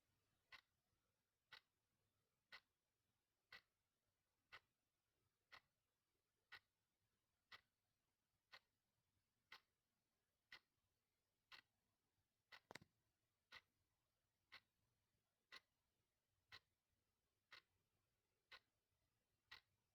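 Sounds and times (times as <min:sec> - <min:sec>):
clock ticking: 0:00.5 - 0:00.7, 0:01.5 - 0:01.7, 0:02.5 - 0:02.7, 0:03.5 - 0:03.7, 0:04.5 - 0:04.7, 0:05.5 - 0:05.8, 0:06.5 - 0:06.7, 0:07.5 - 0:07.7, 0:08.5 - 0:08.7, 0:09.5 - 0:09.7, 0:10.5 - 0:10.7, 0:11.5 - 0:11.7, 0:12.5 - 0:12.8, 0:13.5 - 0:13.7, 0:14.5 - 0:14.7, 0:15.5 - 0:15.7, 0:16.5 - 0:16.7, 0:17.5 - 0:17.7, 0:18.5 - 0:18.7, 0:19.5 - 0:19.8.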